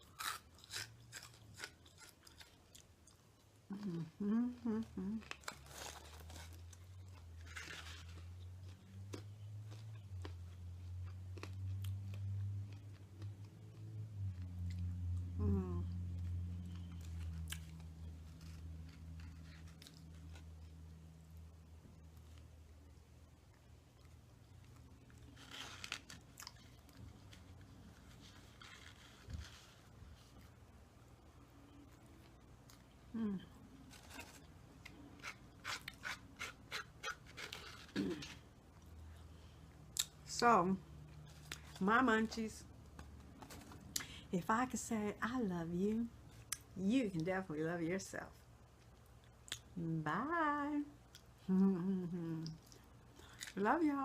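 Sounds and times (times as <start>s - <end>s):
chewing and crunching food: 0.0s - 30.6s, 31.6s - 40.3s, 40.9s - 41.8s, 48.7s - 49.8s, 52.3s - 53.6s
steady low hum: 0.0s - 54.0s.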